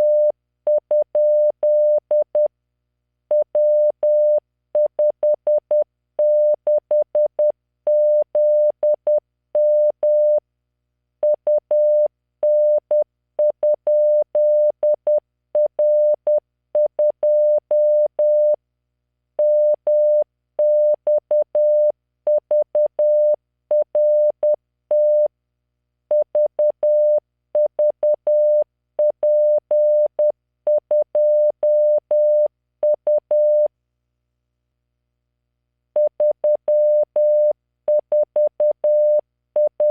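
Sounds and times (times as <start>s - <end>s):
morse code tone: 36.0s - 39.9s.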